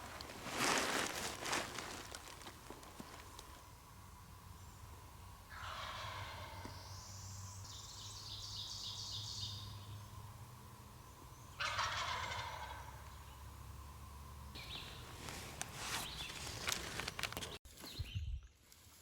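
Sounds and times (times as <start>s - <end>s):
turkey gobbling: 5.5s - 6.9s, 11.5s - 13.1s.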